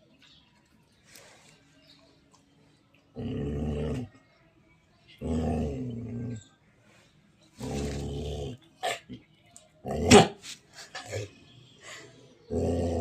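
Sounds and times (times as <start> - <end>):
dog growling: 3.1 - 4.2, 5.2 - 6.5, 7.6 - 9.1, 12.5 - 13.0.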